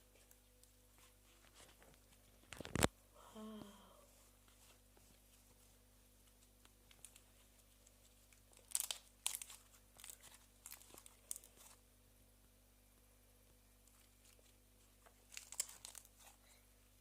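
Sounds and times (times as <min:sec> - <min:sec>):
slime crackling and popping: 0:08.5 - 0:11.8, 0:15.2 - 0:16.1.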